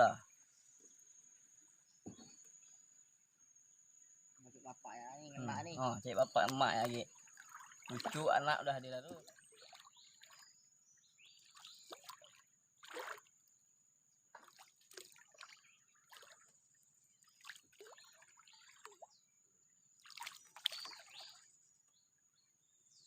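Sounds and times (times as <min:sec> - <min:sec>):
water splashing around boat: 0:06.2 - 0:13.6, 0:14.2 - 0:19.3, 0:19.9 - 0:21.6.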